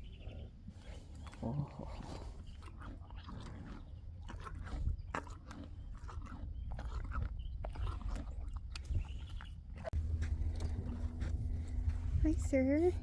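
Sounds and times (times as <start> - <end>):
donkey chomping carrot: 2.2 - 11.9.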